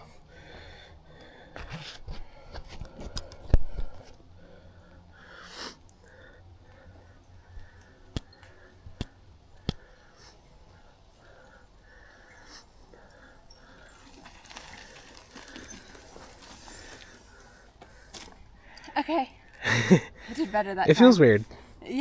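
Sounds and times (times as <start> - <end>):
mountain bike knocking and rattling: 6.4 - 20.0.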